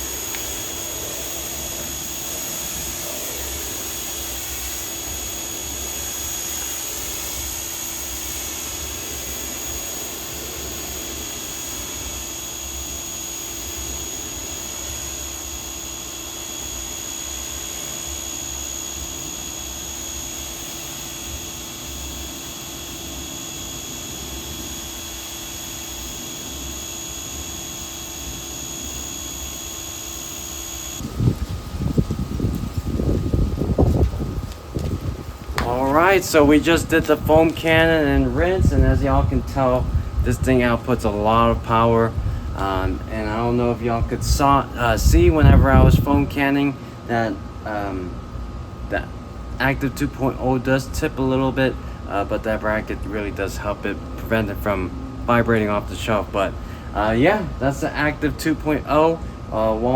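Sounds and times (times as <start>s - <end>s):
pressure washer spraying water: 0.0s - 31.1s.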